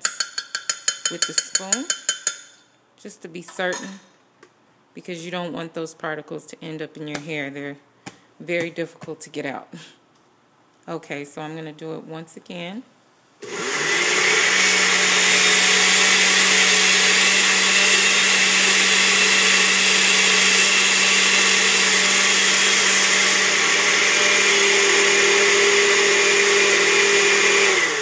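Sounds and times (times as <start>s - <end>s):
blender running: 13.4s - 28.0s.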